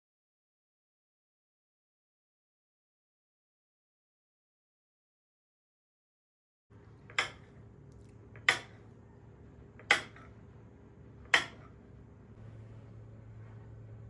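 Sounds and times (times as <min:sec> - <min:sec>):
kitchenware clinking set down: 0:07.1 - 0:07.5.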